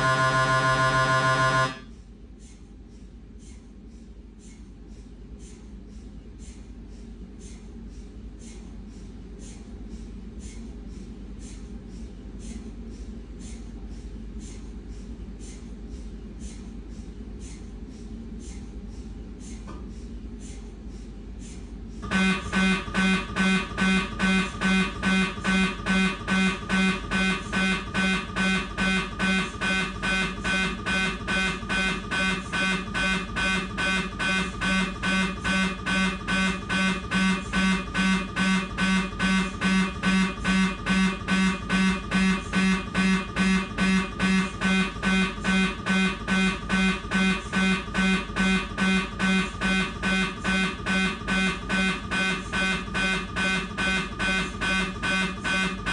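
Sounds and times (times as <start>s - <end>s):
mri scanner pulsed tones: 0.0s - 2.0s, 21.9s - 55.9s.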